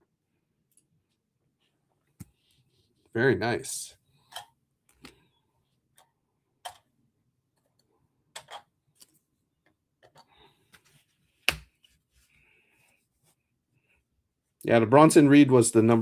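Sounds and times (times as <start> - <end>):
cards clicking and tapping on table: 11.4 - 11.9.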